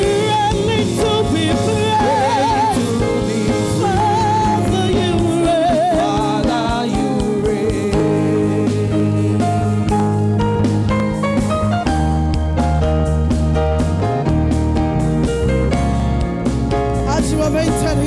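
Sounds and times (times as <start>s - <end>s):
person singing: 0.0s - 10.4s
band playing gospel music: 0.0s - 18.0s.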